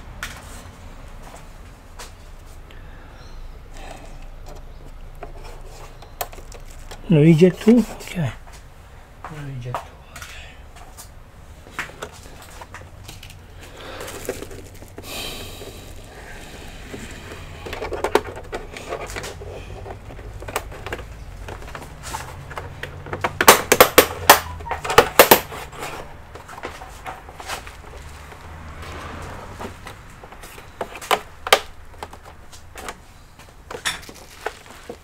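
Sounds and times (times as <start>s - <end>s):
small hard objects clattering: 3.8s - 8.1s, 12.1s - 28.6s, 29.8s - 35.0s
loud sharp clacks: 23.1s - 25.7s.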